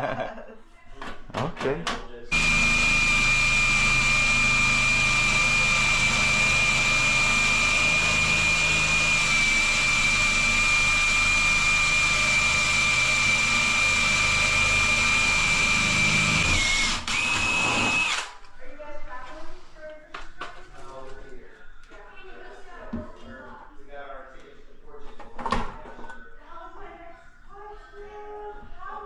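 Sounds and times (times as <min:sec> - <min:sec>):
power drill drilling into steel: 0:02.3 - 0:18.4.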